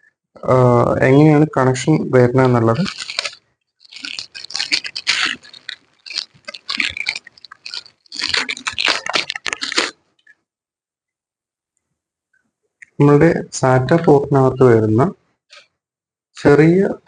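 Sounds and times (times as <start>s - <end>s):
plastic cable rustling and clicking: 2.4s - 10.4s.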